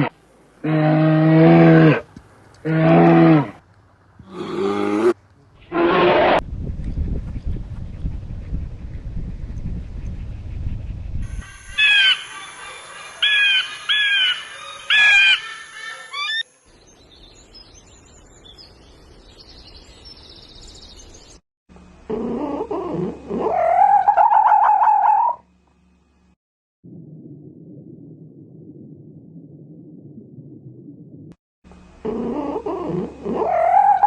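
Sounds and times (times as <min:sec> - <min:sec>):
low rumbling noise: 0:26.8 - 0:33.3.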